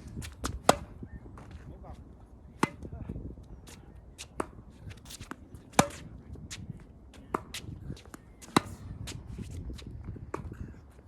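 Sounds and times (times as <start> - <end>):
tennis ball struck by racquet: 0.4 - 1.0, 2.6 - 2.8, 5.7 - 6.1, 8.4 - 8.9.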